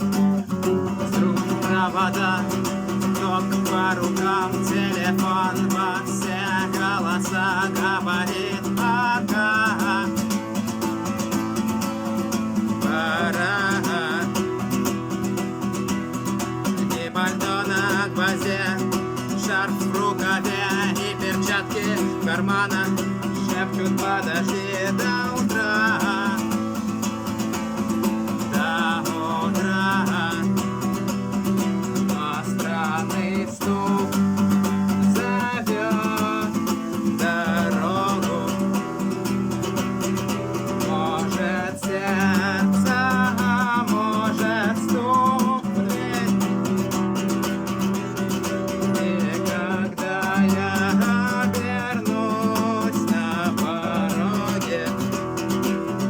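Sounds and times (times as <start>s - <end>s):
acoustic guitar strumming: 0.0s - 56.0s
person singing: 0.0s - 56.0s.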